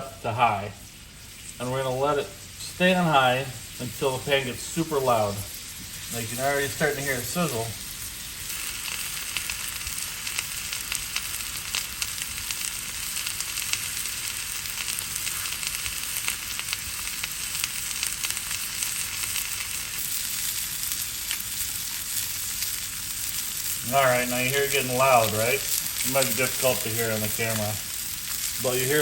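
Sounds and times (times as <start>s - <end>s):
poultry sizzling in a pan: 0.0s - 29.0s.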